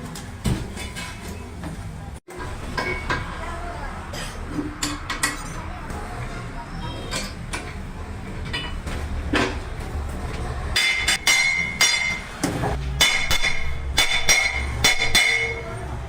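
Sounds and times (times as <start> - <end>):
hammer striking steel wheel rim: 10.8 - 15.7.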